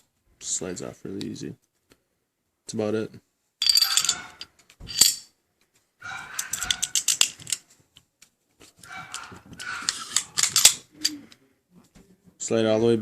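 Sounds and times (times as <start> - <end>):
metal clicks of pistol parts: 6.3 - 8.1, 9.1 - 10.9.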